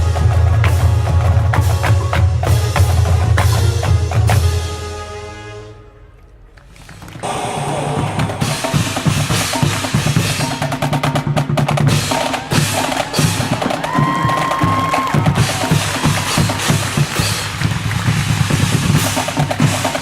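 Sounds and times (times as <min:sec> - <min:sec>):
snare and bass drums: 0:00.0 - 0:05.0, 0:07.2 - 0:20.0
marching band playing: 0:00.0 - 0:20.0.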